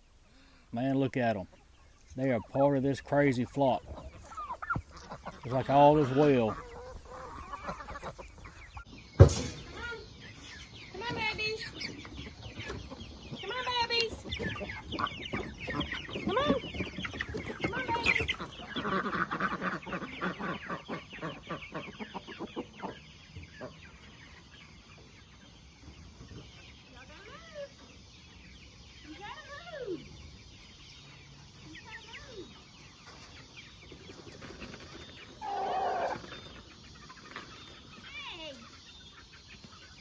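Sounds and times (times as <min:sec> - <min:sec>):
chickens clucking: 0:00.0 - 0:40.0
chicken harsh squawk: 0:03.8 - 0:08.3, 0:35.4 - 0:36.2.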